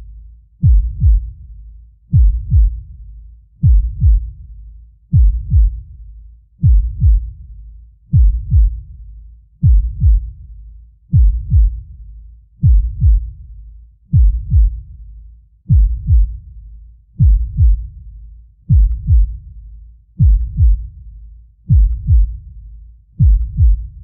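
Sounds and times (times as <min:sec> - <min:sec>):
heartbeat thumps: 0:00.6 - 0:01.4, 0:02.1 - 0:02.9, 0:03.6 - 0:04.4, 0:05.1 - 0:05.9, 0:06.6 - 0:07.4, 0:08.1 - 0:08.9, 0:09.6 - 0:10.4, 0:11.1 - 0:11.9, 0:12.6 - 0:13.4, 0:14.1 - 0:15.0, 0:15.7 - 0:16.5, 0:17.2 - 0:18.1, 0:18.7 - 0:19.6, 0:20.2 - 0:21.0, 0:21.7 - 0:22.6, 0:23.2 - 0:24.0.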